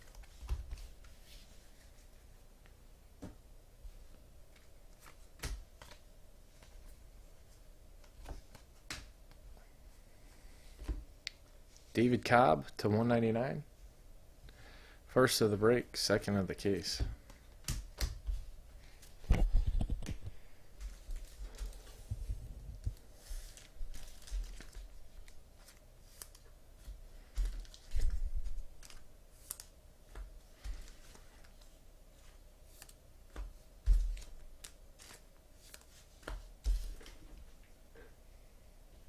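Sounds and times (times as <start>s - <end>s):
wrappers tearing and crinkling: 23.4s - 25.4s.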